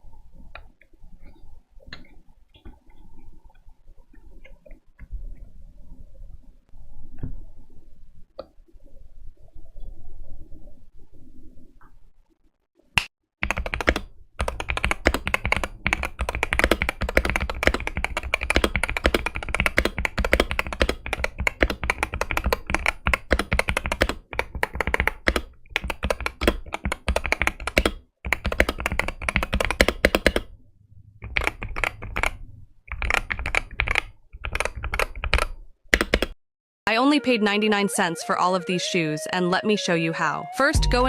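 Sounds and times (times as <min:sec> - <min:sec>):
fast typing on keyboard: 0:13.4 - 0:30.5, 0:31.2 - 0:36.4.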